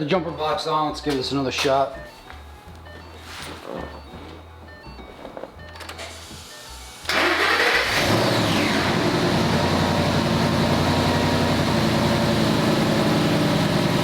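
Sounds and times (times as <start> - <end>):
car engine starting and idling: 5.8 - 14.0.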